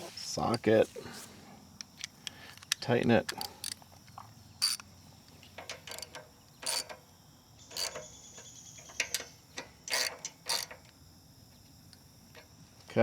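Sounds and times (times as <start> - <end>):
socket ratchet clicking: 1.9 - 7.0, 7.6 - 11.0.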